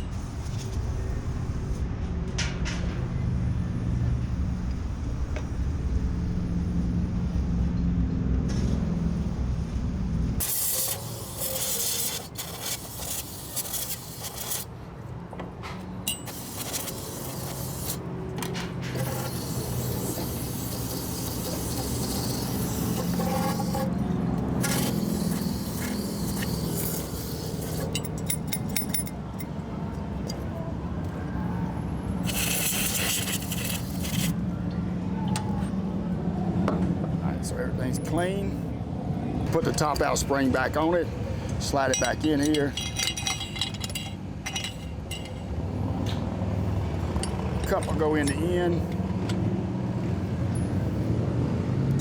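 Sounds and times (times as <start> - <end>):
hissing spray: 10.4 - 14.7, 16.3 - 18.0, 19.0 - 23.9, 24.6 - 28.0, 32.2 - 34.4.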